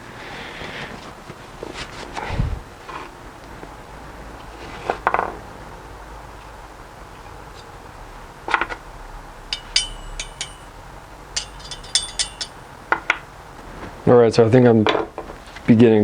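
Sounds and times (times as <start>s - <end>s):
metal parts clinking on workbench: 9.6s - 10.8s, 11.4s - 12.6s.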